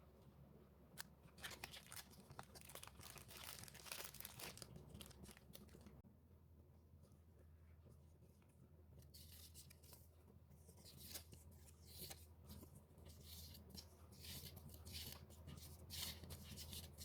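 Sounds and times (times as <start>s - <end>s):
faint paper rustles: 1.2s - 6.0s, 7.7s - 17.0s
paper crackling and tearing: 1.4s - 6.0s.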